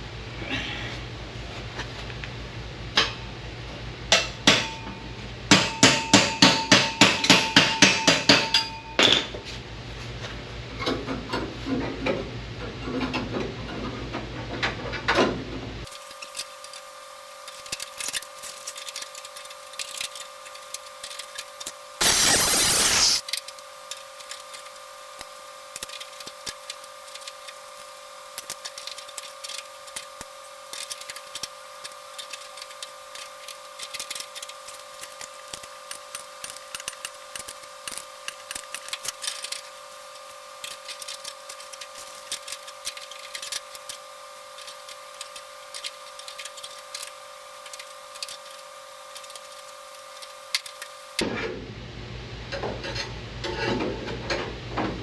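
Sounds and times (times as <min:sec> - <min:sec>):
steady hum: 0:15.9 - 0:51.2
loud hissing burst: 0:22.0 - 0:23.2.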